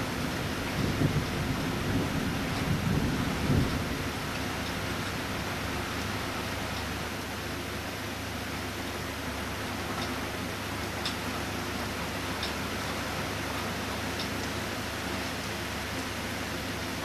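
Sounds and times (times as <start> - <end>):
low thunder rumble: 0.0 - 5.5
heavy rain hissing: 0.0 - 8.6.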